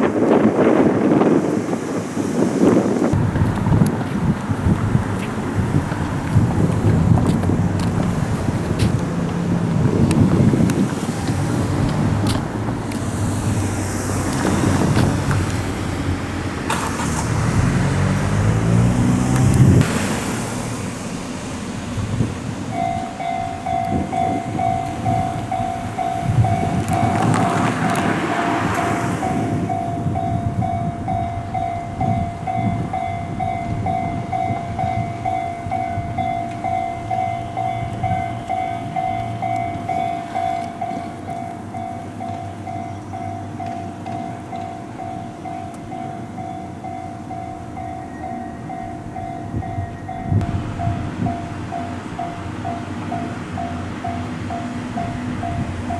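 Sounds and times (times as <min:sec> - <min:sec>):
train passing with whine: 0:00.0 - 0:55.9
vehicle passing by: 0:02.0 - 0:31.0
railroad crossing alarm ringing: 0:20.5 - 0:55.9.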